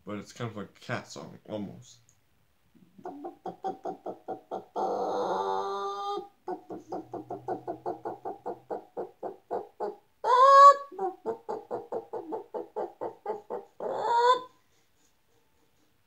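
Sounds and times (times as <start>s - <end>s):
person imitating chicken clucks: 2.8s - 14.5s.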